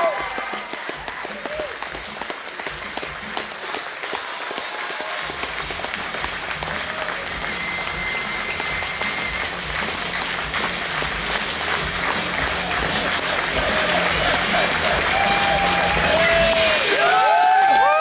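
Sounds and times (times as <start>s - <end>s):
audience clapping and cheering: 0.0s - 18.0s
low background music: 5.2s - 18.0s.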